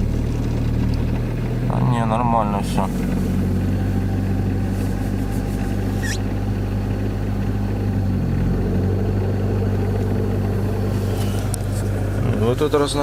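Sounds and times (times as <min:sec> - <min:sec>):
car engine idling: 0:00.0 - 0:13.0
power steering pump humming: 0:00.0 - 0:13.0
short high squeak: 0:05.9 - 0:06.3.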